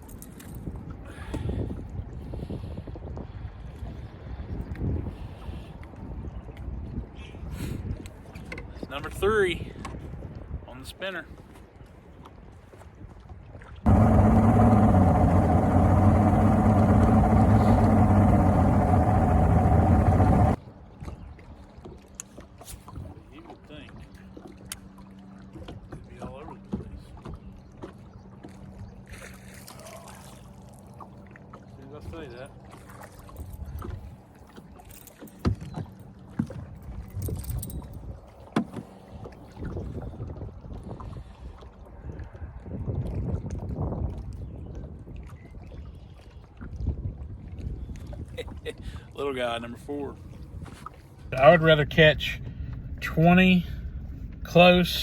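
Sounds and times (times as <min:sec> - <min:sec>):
wind on microphone: 0:00.5 - 0:08.9, 0:09.6 - 0:10.7, 0:13.9 - 0:21.3, 0:39.1 - 0:49.0
boat motor humming: 0:13.9 - 0:20.6, 0:51.0 - 0:55.0.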